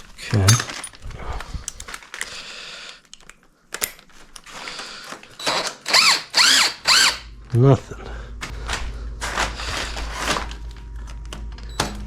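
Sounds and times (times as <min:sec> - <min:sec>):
metal parts squeaking: 0:00.1 - 0:01.0, 0:05.4 - 0:07.2.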